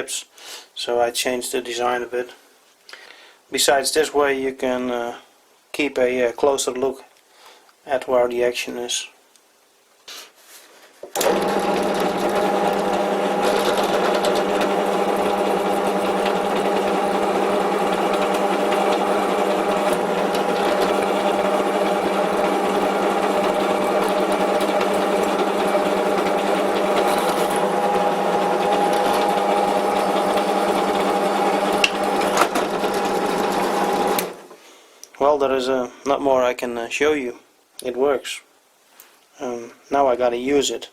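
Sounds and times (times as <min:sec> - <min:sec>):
drill press motor hum: 0:11.1 - 0:34.5
drill bit drilling into steel: 0:11.2 - 0:34.4.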